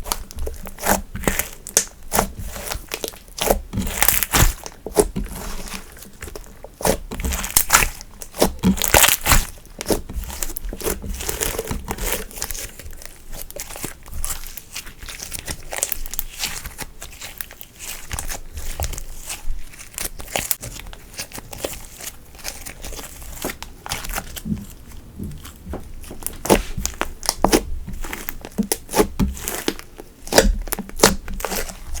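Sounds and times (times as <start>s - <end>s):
slime crackling pops: 26.2s - 31.6s.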